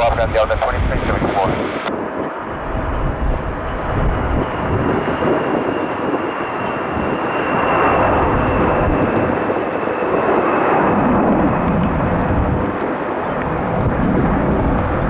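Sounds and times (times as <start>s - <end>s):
low rumble: 0.0s - 1.9s
jet engines at takeoff power: 0.0s - 15.0s.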